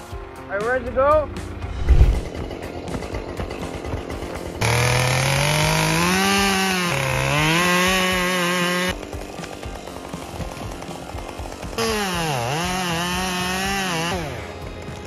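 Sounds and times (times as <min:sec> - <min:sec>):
chainsaw idling and revving: 0:01.6 - 0:15.0.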